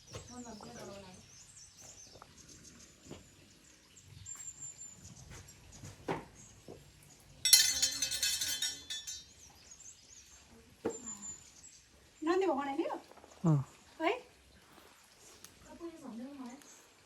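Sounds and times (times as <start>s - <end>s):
small metal bell ringing: 7.4s - 9.5s.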